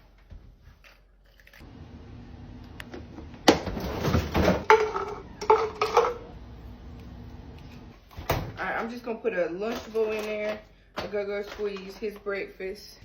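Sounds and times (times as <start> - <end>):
kitchen objects clinking and knocking: 3.5 - 6.4.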